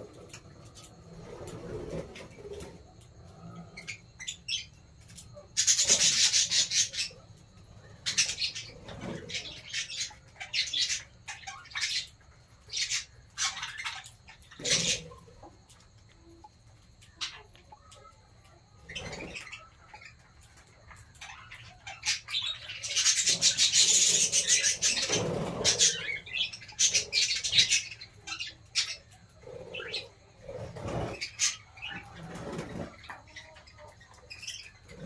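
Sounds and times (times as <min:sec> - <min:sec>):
wings flapping and rustling: 0:00.0 - 0:03.0, 0:22.8 - 0:27.7, 0:29.8 - 0:33.3
small birds chirping: 0:00.0 - 0:35.0.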